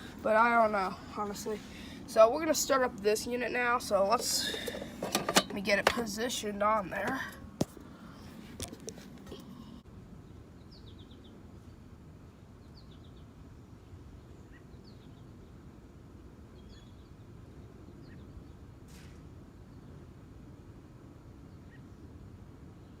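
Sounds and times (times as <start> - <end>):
small birds chirping: 9.4 - 15.8, 16.4 - 18.7.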